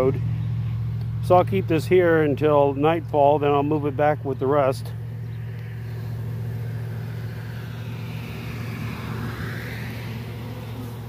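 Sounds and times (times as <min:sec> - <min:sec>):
steady low hum: 0:00.0 - 0:11.0
car passing: 0:03.8 - 0:11.0.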